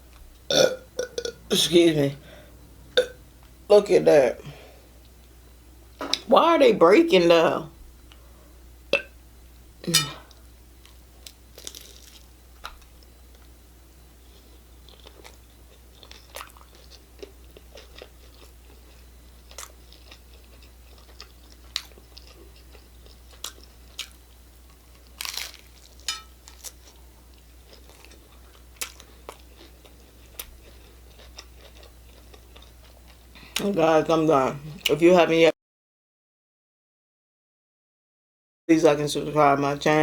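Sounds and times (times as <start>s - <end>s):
crunching and chewing tacos: 10.2s - 33.7s.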